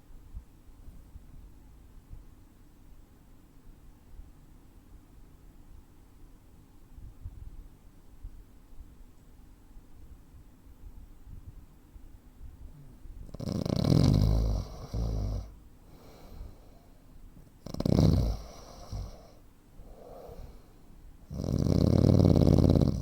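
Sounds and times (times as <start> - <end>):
quiet breaths: 9.9 - 23.0
man snoring heavily: 13.3 - 16.3, 17.6 - 20.6, 21.3 - 23.0.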